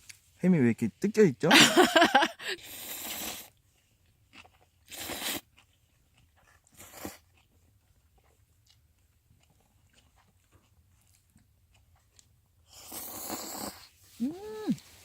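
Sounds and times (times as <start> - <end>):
slurping noodles: 2.6 - 3.6, 4.8 - 5.6, 6.6 - 7.3, 12.7 - 15.0
chewing and clicks: 3.5 - 13.0.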